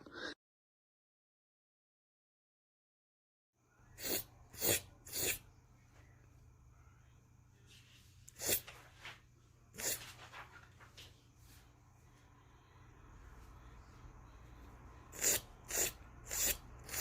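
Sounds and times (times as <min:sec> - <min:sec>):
faint steady hum: 0:03.6 - 0:17.0.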